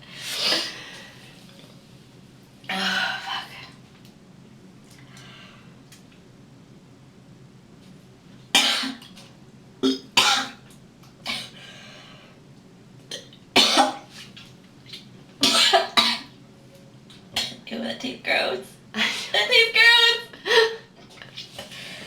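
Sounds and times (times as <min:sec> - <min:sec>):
woman coughing and retching: 0:08.6 - 0:09.0, 0:09.8 - 0:10.6, 0:13.1 - 0:14.1, 0:15.4 - 0:16.3, 0:17.4 - 0:17.6.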